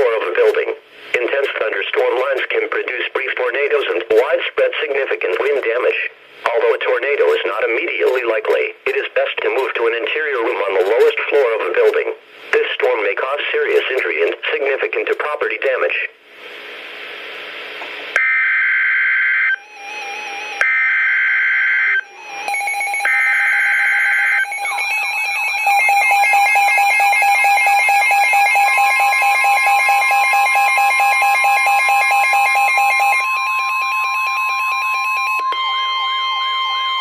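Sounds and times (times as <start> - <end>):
radio hiss: 0.0 - 18.2
steady warning tone: 18.2 - 37.0
warbling pulsing alert alarm: 18.2 - 37.0.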